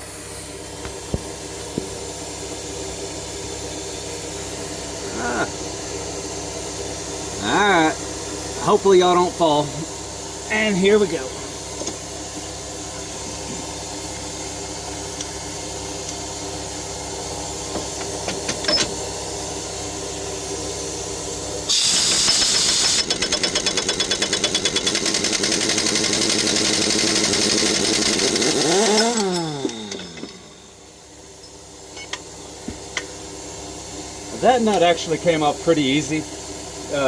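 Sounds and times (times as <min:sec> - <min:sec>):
steady machine hum: 0:00.0 - 0:22.1, 0:25.2 - 0:37.0
air impact wrench hammering: 0:00.8 - 0:02.8, 0:17.6 - 0:19.1, 0:21.7 - 0:33.4.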